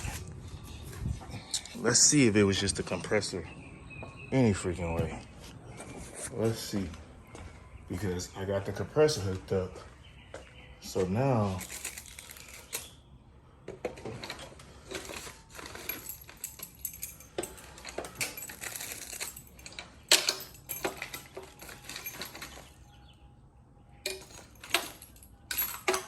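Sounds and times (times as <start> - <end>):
metallic clinks and rattles: 11.5 - 13.0, 13.7 - 23.2, 24.0 - 26.0.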